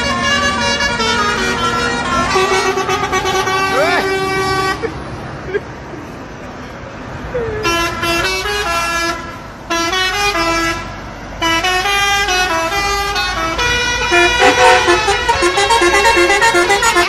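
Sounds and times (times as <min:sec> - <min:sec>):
horn playing a tune: 0:14.1 - 0:17.0.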